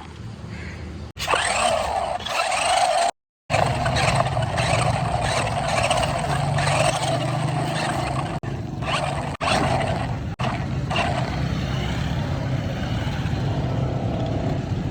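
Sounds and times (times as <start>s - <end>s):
vehicle engine running: 3.5s - 14.9s.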